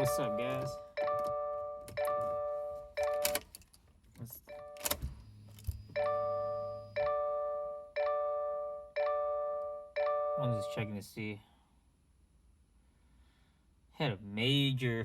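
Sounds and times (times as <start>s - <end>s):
bell-like chiming chords: 0.0s - 3.2s, 5.7s - 11.0s.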